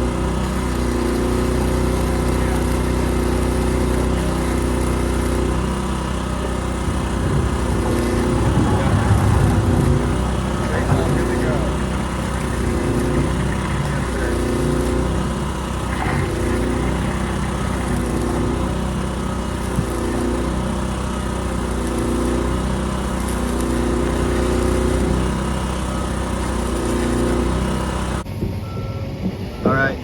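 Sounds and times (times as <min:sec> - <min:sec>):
engine running: 0:00.0 - 0:30.0
welding arc crackling hiss: 0:14.3 - 0:25.5.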